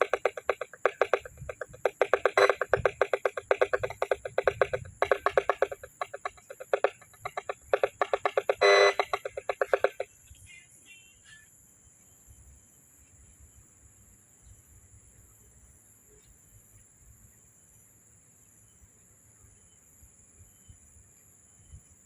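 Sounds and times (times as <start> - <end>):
alarm beeping rapidly: 0.0 - 10.1.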